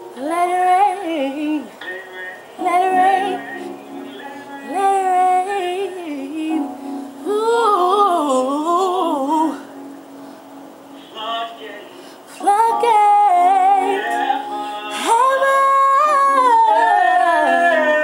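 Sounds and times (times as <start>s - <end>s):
person singing gospel: 0.0s - 10.0s, 10.9s - 18.0s.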